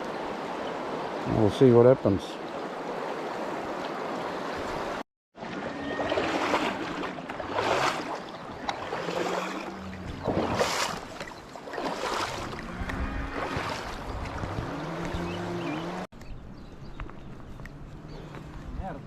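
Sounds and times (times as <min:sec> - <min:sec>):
river water flowing: 0:00.0 - 0:16.1
wind buffeting microphone: 0:12.3 - 0:15.6.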